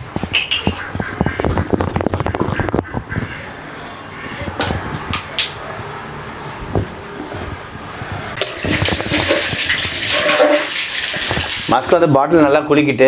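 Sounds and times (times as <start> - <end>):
water running from a tap: 8.4 - 12.0.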